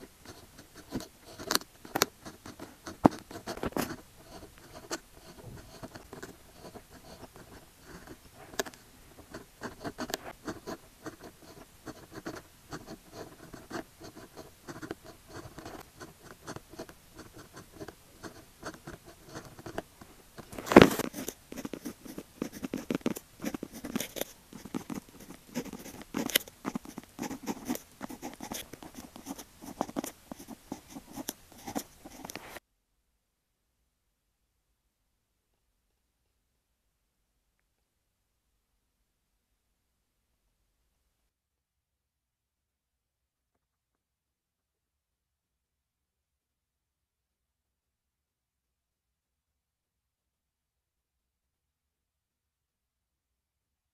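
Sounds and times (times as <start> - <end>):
pen scratching on paper: 0.0 - 32.6.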